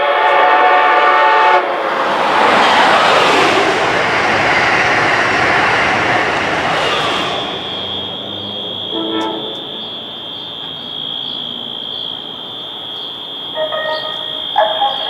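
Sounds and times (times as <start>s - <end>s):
vehicle noise rush: 1.2s - 10.9s
fire alarm horns high tone: 7.9s - 15.0s.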